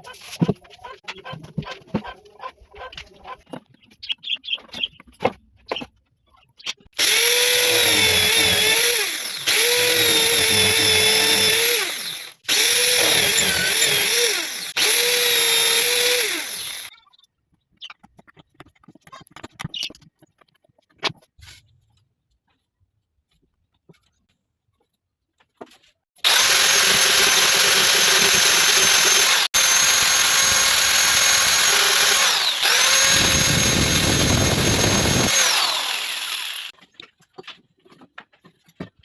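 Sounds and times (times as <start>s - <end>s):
power tool motor spinning: 7.0s - 16.9s, 26.2s - 36.7s.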